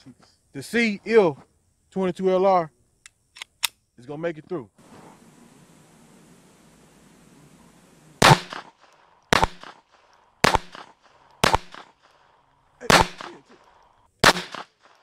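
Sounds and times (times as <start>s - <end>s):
rifle gunshots: 8.2s - 12.1s, 12.8s - 15.0s.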